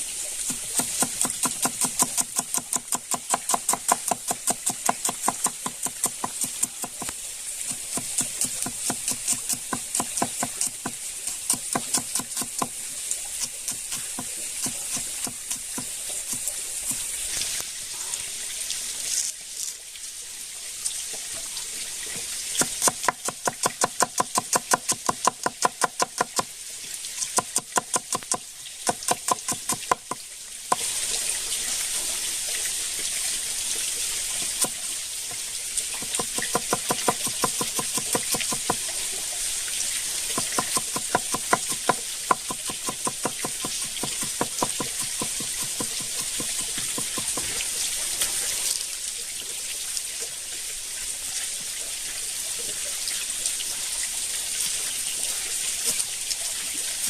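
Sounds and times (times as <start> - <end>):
sharp knocks: 40.4 - 47.6.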